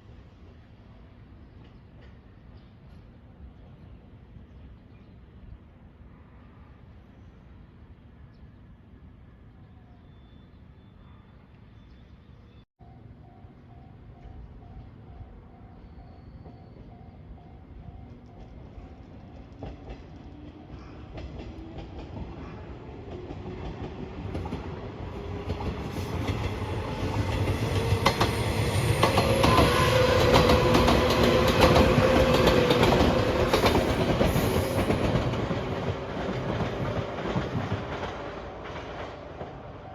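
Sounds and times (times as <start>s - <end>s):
train passing: 12.8s - 39.9s.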